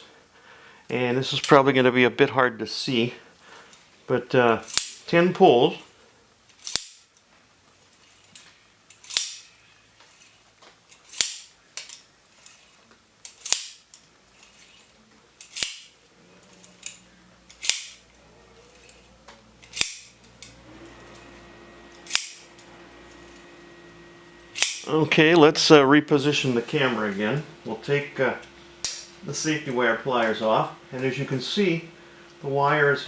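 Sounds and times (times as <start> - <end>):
sharp metallic pliers click: 4.7 - 5.0, 6.5 - 7.0, 8.9 - 9.5, 13.2 - 13.9, 15.4 - 15.9, 16.8 - 18.0, 19.6 - 20.5, 22.1 - 22.4, 24.6 - 24.9, 28.8 - 29.1.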